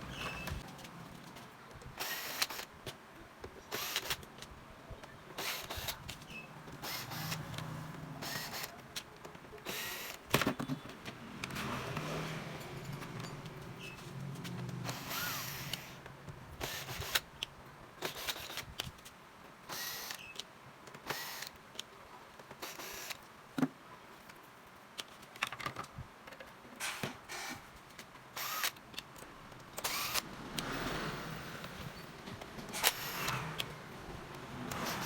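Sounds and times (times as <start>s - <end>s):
hand tools clicking and scraping: 5.3s - 17.4s, 26.3s - 35.0s.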